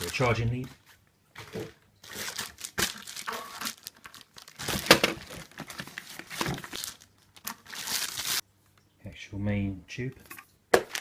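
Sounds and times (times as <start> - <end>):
plastic packaging crinkling: 0.0 - 0.6, 1.4 - 8.4, 10.8 - 11.0.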